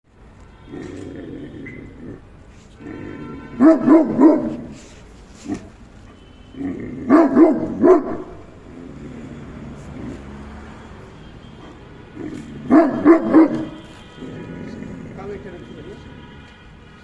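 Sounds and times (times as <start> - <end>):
dog barking: 3.6 - 4.8, 7.1 - 8.4, 12.6 - 13.9.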